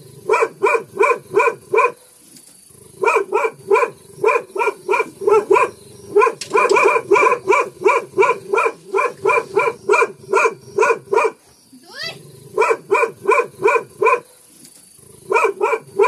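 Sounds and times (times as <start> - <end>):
dog barking: 0.3 - 2.0, 3.0 - 11.4, 12.6 - 14.3, 15.3 - 16.0.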